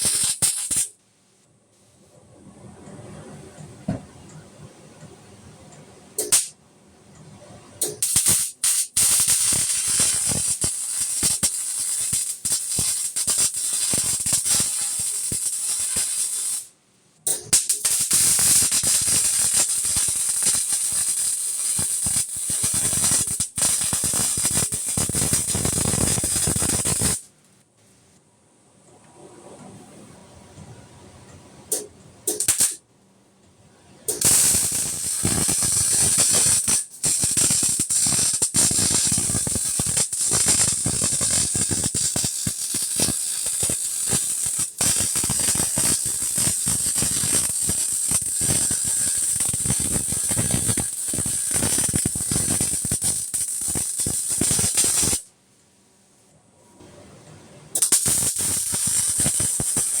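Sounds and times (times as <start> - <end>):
arc welder crackling: 0.0 - 1.0, 6.2 - 6.5, 7.8 - 16.7, 17.3 - 27.3, 31.7 - 32.8, 34.1 - 55.3, 57.8 - 60.0.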